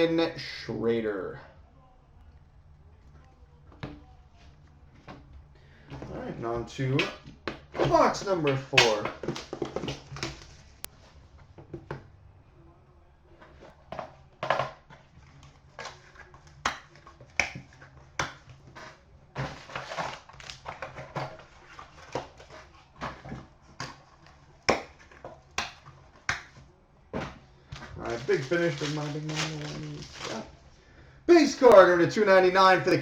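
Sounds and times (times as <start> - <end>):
plastic wrapping crinkling and tearing: 19.4 - 23.0, 27.8 - 30.7.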